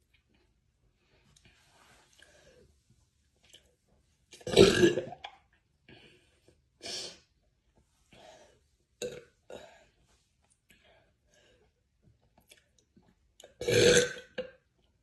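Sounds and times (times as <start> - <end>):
woman burping: 4.4 - 5.2, 13.6 - 14.5.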